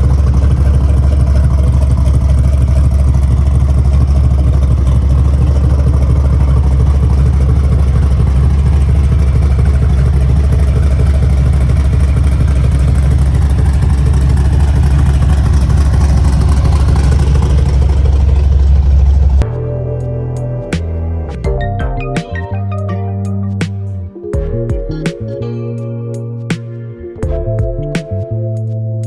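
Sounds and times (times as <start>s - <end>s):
engine rumbling: 0.0s - 22.3s.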